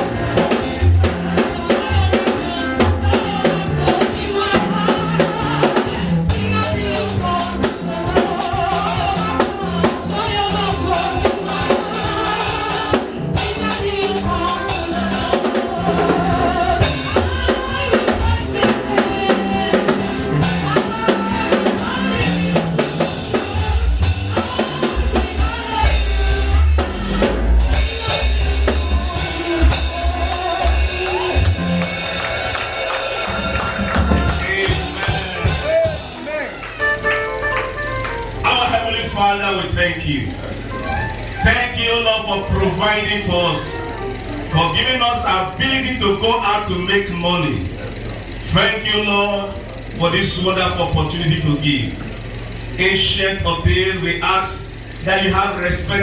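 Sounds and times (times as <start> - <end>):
heavy deep bass: 0.0 - 36.6
drum kit beat: 0.0 - 38.9
music with instruments: 0.0 - 39.4, 40.4 - 44.8.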